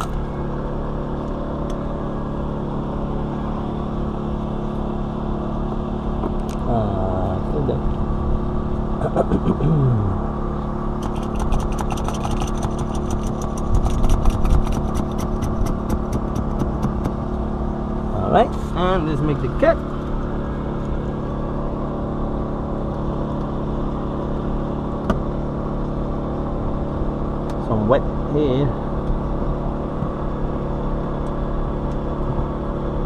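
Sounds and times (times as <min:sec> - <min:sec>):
mechanical hum: 0:00.0 - 0:33.0
fast regular clicking: 0:11.0 - 0:17.2.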